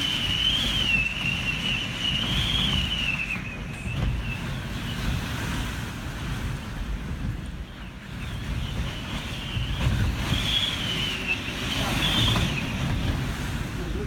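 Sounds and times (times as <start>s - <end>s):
high wavering whistle: 0.0s - 5.2s, 8.2s - 13.1s
wind buffeting microphone: 0.0s - 14.0s.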